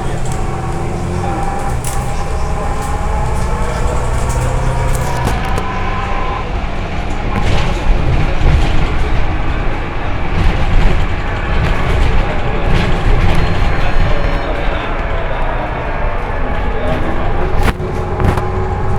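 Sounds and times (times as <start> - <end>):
rattling clatter: 0.0 - 6.0
bus engine and road rumble: 0.0 - 18.9.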